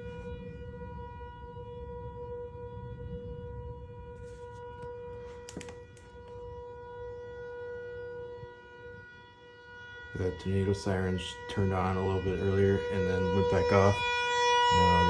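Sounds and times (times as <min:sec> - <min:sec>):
steady warning siren: 0:00.0 - 0:15.0
sharp clicks: 0:05.4 - 0:06.4.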